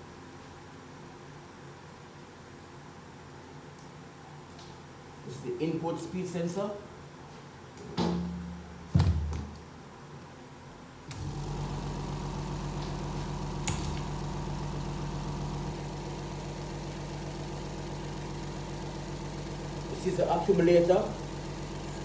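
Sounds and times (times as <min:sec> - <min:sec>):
machine motor humming: 0:11.1 - 0:22.0.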